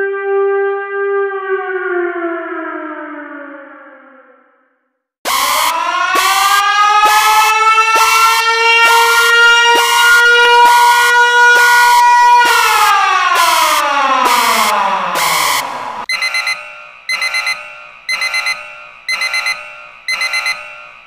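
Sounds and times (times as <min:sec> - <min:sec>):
civil defence siren wailing: 0:00.0 - 0:16.1
harsh pulsing buzz: 0:05.3 - 0:21.0.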